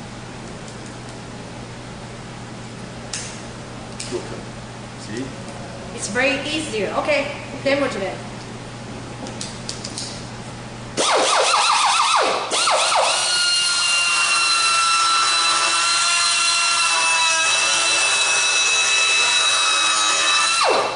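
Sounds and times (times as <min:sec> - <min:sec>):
die grinder whining: 0:12.6 - 0:20.9.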